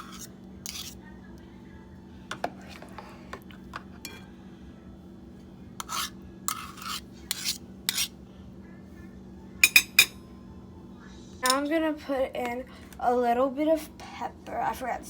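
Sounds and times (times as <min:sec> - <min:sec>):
spoon scraping a bowl: 0:00.0 - 0:01.0, 0:02.4 - 0:04.2, 0:05.8 - 0:08.2.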